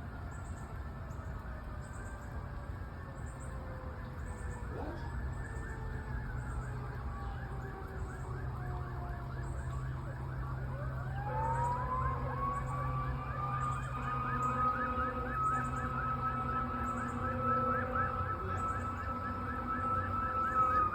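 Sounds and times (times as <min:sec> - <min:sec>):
fire engine siren yelping: 0:00.0 - 0:20.9
siren winding up to a wail: 0:01.4 - 0:20.9
steady low rumble: 0:10.2 - 0:20.9.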